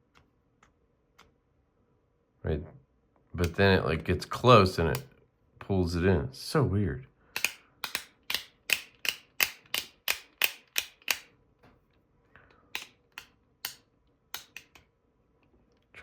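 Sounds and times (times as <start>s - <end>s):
magnetic toy clicking: 7.4s - 11.3s, 12.8s - 14.8s.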